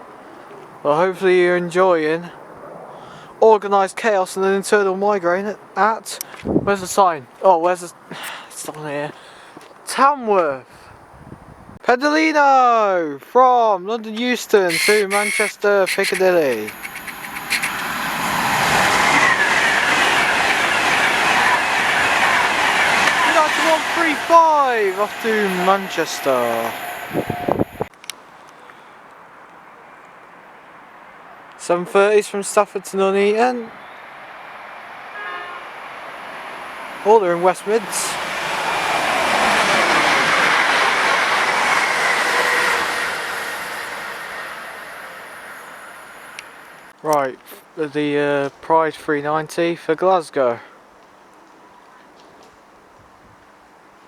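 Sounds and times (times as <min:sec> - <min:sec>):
wheel and rail noise: 0:14.5 - 0:28.2, 0:33.8 - 0:47.0
electric train passing: 0:14.7 - 0:27.9, 0:34.1 - 0:46.9.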